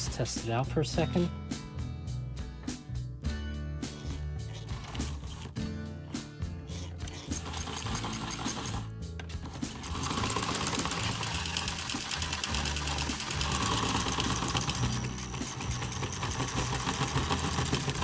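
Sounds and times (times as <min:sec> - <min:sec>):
toy train motor rattling: 0:03.9 - 0:05.5, 0:06.7 - 0:18.0.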